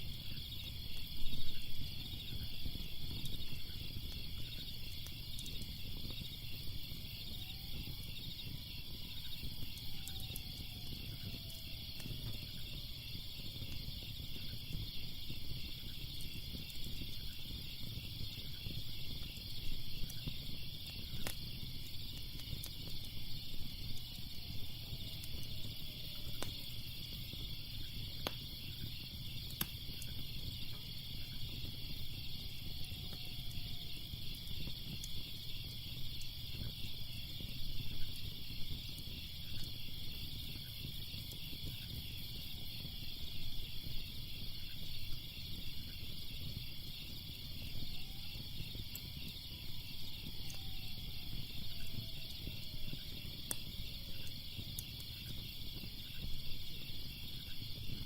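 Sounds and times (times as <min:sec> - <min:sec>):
crackling fire: 0:00.0 - 0:58.0
crickets chirping: 0:00.0 - 0:58.0
fire popping: 0:00.0 - 0:58.0.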